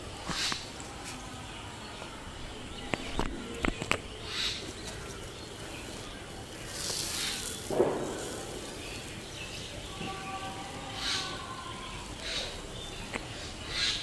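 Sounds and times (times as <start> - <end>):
hissing rush: 5.2 - 14.0.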